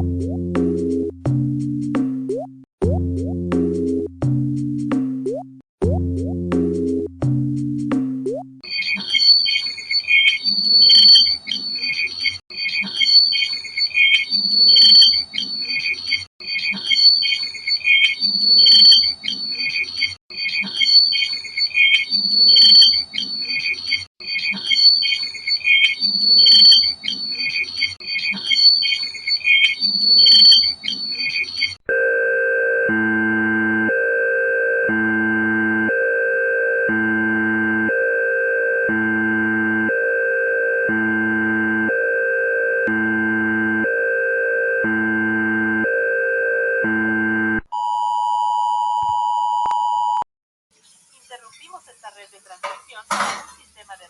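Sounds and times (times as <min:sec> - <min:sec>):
steady high alarm tone: 0:10.4 - 0:12.0, 0:14.4 - 0:15.7, 0:22.2 - 0:23.5, 0:31.9 - 0:47.9
multi-pitched alarm pattern: 0:31.9 - 0:47.6.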